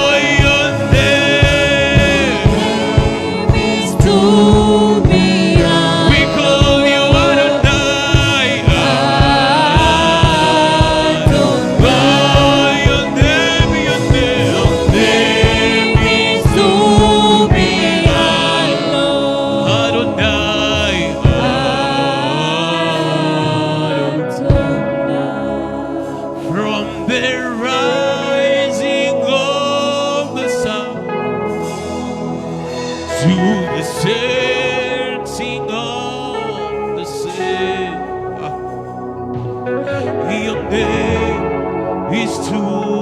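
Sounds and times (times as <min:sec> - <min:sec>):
steady drum beat: 0:00.0 - 0:22.1
voices singing: 0:00.0 - 0:43.0.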